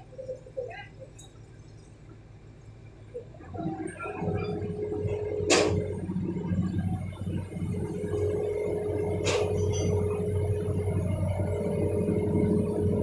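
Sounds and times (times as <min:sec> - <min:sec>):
steady whine: 0:00.0 - 0:13.0
excavator engine revving: 0:03.4 - 0:13.0.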